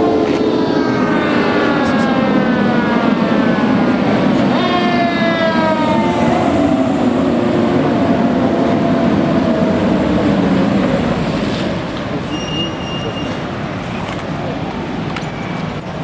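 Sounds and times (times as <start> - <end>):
emergency siren sliding down: 0.0 - 11.4
heavy vehicle rumbling: 0.0 - 16.0.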